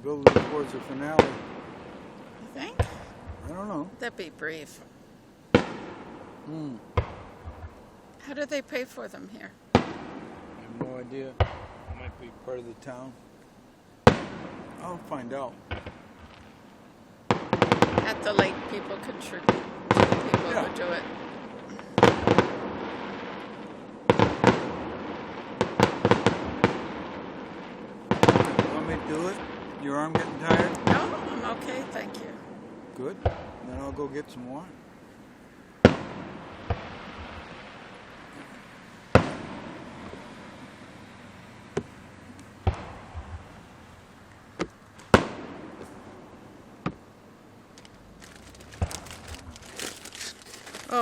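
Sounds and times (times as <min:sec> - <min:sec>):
fireworks bursting with echo: 0:00.0 - 0:51.0.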